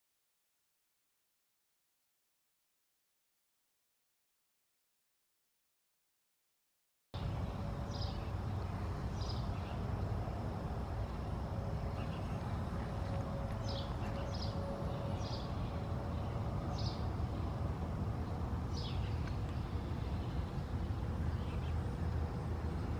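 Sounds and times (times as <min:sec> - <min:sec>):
bird chirping: 0:07.2 - 0:10.2, 0:11.8 - 0:17.6, 0:18.2 - 0:22.9
steady low rumble: 0:07.2 - 0:22.9.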